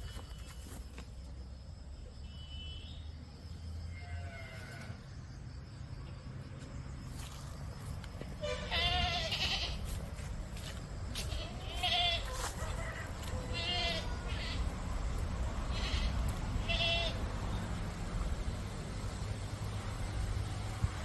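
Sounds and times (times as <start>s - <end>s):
goats bleating: 8.4s - 9.9s, 11.2s - 14.7s, 15.7s - 17.2s.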